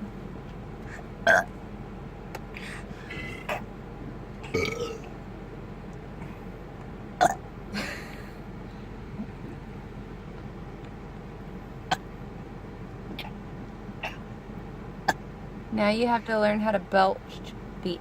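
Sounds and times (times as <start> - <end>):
person burping: 1.3 - 1.5, 4.5 - 5.1.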